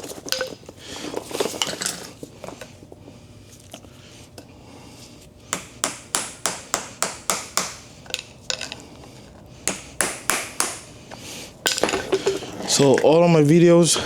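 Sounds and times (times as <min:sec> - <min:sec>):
hammer tapping on metal: 0:05.6 - 0:07.9, 0:09.7 - 0:11.0.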